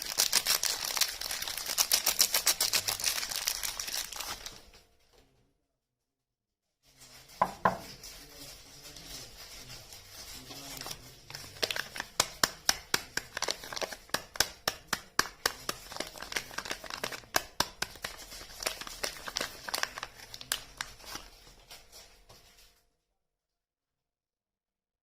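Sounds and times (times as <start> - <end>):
packaging crinkling: 0.0 - 4.8, 9.4 - 22.1.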